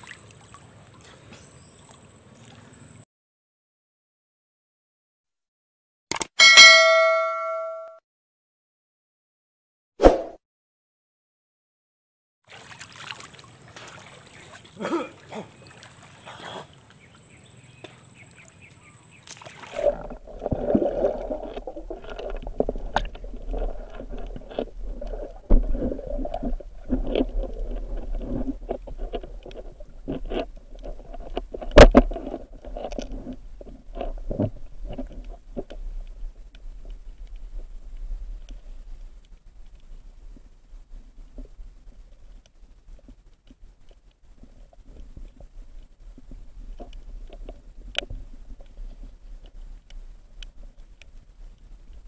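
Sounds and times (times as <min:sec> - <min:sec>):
water sloshing: 0:00.0 - 0:03.0, 0:12.5 - 0:37.6
faint high steady tone: 0:06.4 - 0:08.0
underwater clicks and knocks: 0:19.9 - 0:38.6, 0:42.4 - 0:50.6.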